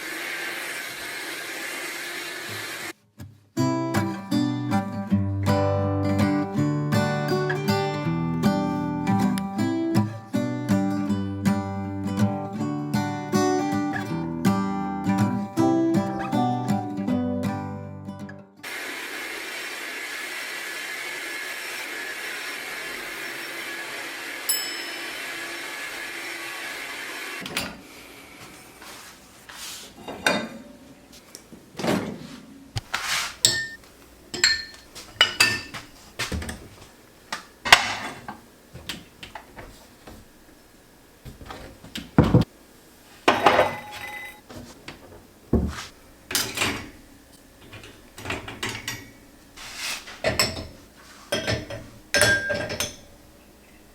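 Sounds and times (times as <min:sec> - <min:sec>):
steady hiss: 0:32.8 - 0:41.2, 0:49.1 - 0:52.2
dishes clinking and knocking: 0:33.4 - 0:36.8, 0:37.6 - 0:40.2, 0:41.3 - 0:42.5, 0:43.3 - 0:47.0, 0:47.6 - 0:49.2, 0:50.1 - 0:53.2.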